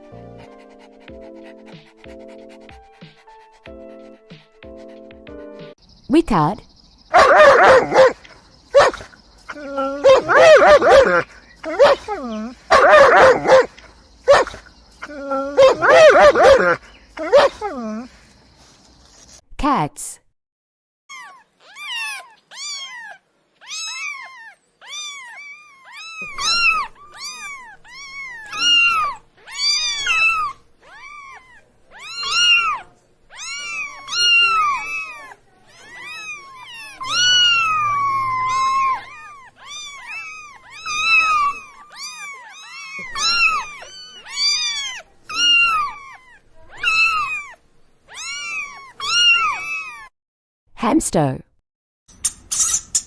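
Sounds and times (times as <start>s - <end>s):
cat meowing: 21.1s - 50.1s.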